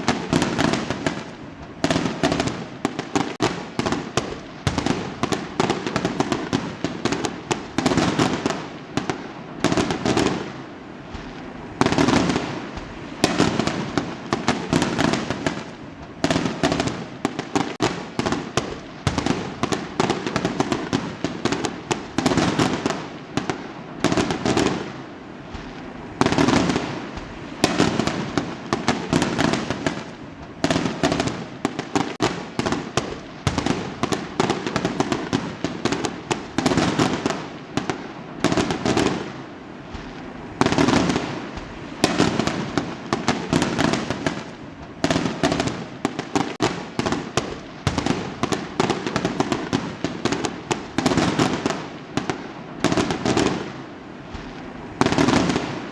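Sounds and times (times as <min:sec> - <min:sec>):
fireworks crackling bangs: 0:00.0 - 0:55.9
heavy firework bursts: 0:00.0 - 0:55.9.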